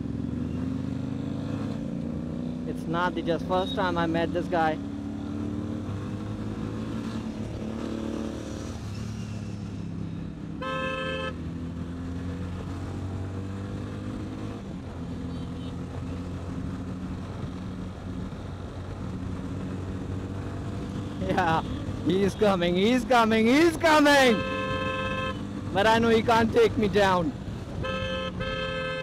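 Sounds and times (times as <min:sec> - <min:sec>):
vehicle horn: 0:10.6 - 0:11.4, 0:24.3 - 0:25.5, 0:27.8 - 0:29.0.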